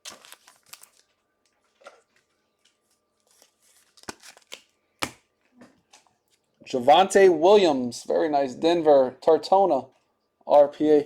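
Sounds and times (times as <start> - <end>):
cards sliding and rustling: 3.2 - 5.2.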